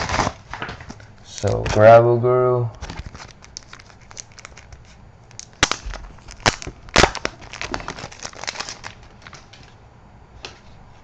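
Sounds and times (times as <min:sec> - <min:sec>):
packaging crinkling: 0:00.0 - 0:01.7, 0:02.8 - 0:09.8
packaging snaps: 0:02.8 - 0:09.7.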